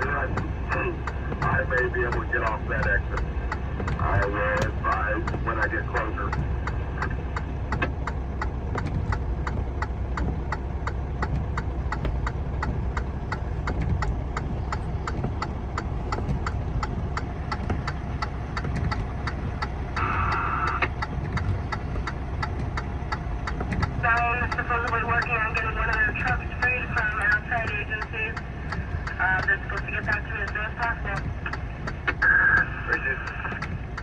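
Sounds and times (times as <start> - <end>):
vehicle engine idling: 0.0 - 34.0
mechanical ticking: 0.2 - 34.0.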